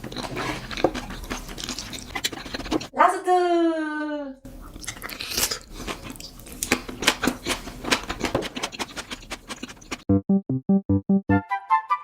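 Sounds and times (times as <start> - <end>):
person chewing crunchy food: 0.0 - 2.9, 4.6 - 10.1.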